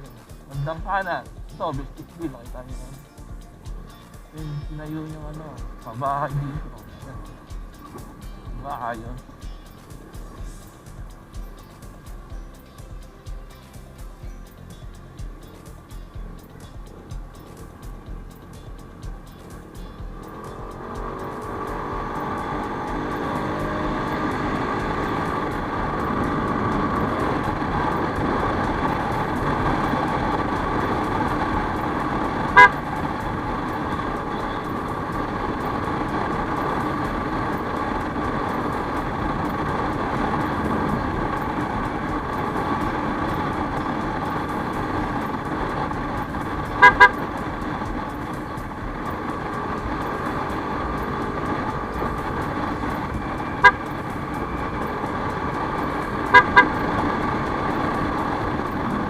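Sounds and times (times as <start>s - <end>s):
scooter riding on road: 0.0s - 59.0s
horn beeps: 32.2s - 35.0s, 46.6s - 47.4s, 53.2s - 54.8s, 56.0s - 57.0s.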